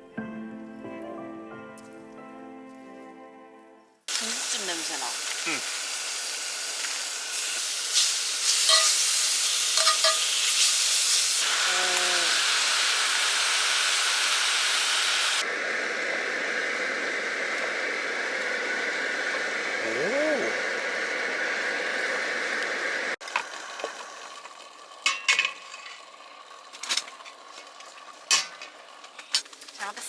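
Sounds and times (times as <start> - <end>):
food sizzling in a pan: 4.1 - 19.8.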